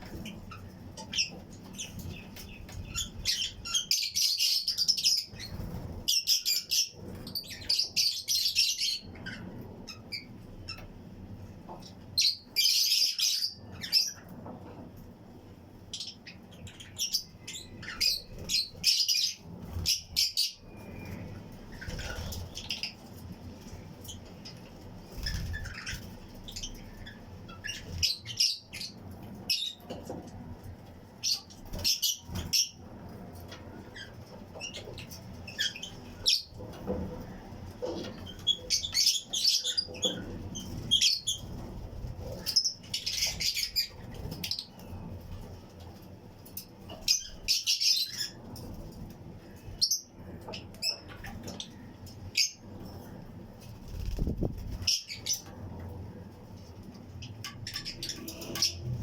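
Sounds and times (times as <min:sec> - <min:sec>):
lovebirds chirping: 0:00.0 - 0:10.9, 0:15.9 - 0:30.2, 0:33.8 - 0:45.2, 0:46.9 - 0:53.1, 0:53.8 - 0:55.6, 0:57.1 - 0:59.0.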